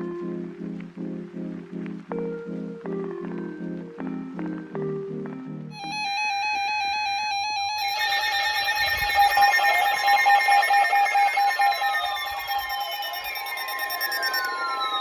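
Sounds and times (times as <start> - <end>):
harsh electronic alarm tone: 5.7 - 14.7.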